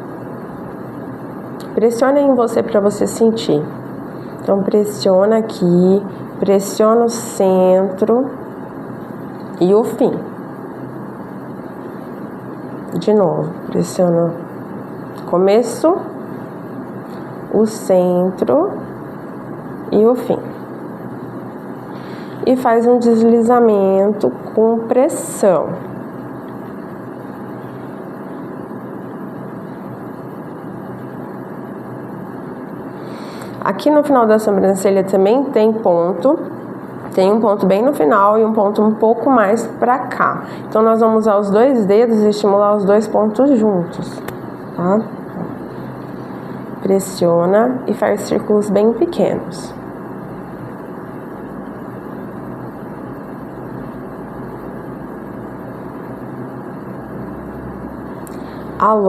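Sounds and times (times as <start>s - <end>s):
faint low hum: 0.0s - 59.0s.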